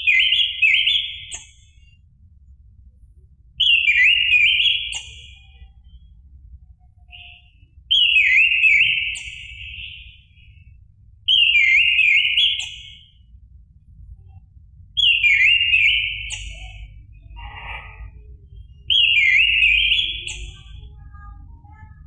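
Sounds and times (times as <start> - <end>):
faint low hum: 0.0 - 22.0
thrush singing whistled notes: 7.1 - 10.1, 11.3 - 13.2, 15.0 - 16.9, 18.5 - 20.7.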